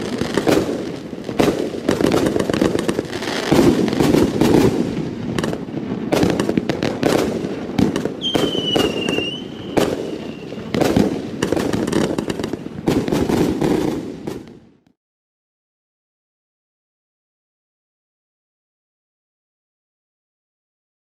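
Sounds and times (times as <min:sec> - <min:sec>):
firework bangs: 0:00.0 - 0:14.8
high firework whistle: 0:08.2 - 0:10.9.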